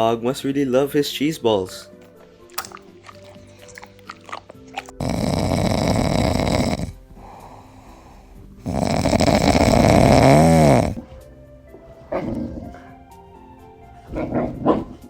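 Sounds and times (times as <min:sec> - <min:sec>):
dog snoring: 0:02.7 - 0:11.3, 0:12.1 - 0:13.1.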